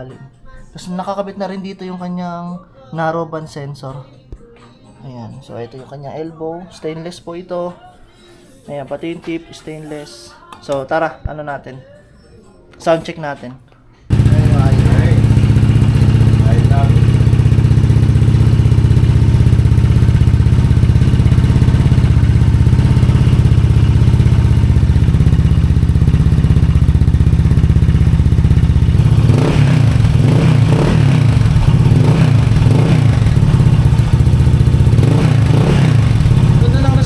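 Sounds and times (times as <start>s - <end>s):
scooter engine idling and revving: 14.1s - 37.0s.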